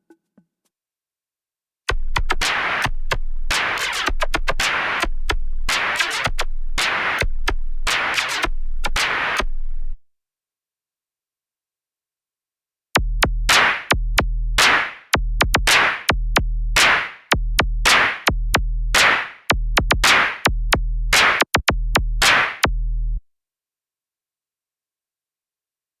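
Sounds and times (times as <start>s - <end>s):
synthesizer drum machine beat: 13.0s - 23.2s.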